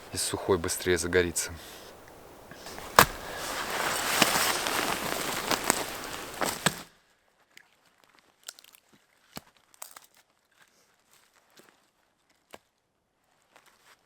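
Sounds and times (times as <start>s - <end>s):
dry wood crunching and snapping: 1.8s - 6.9s, 8.2s - 10.3s.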